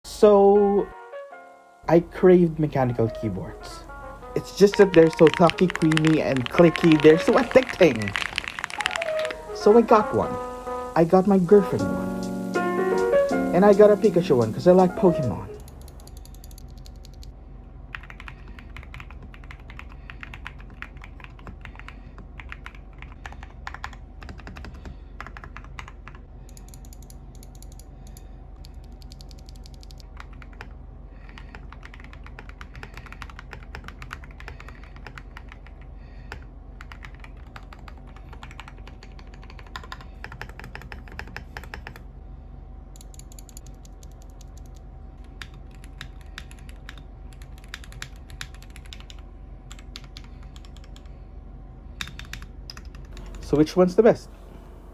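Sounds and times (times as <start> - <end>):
mechanical keyboard typing: 4.4 - 9.5, 13.5 - 30.7, 31.3 - 42.0, 43.0 - 51.1, 52.0 - 53.7.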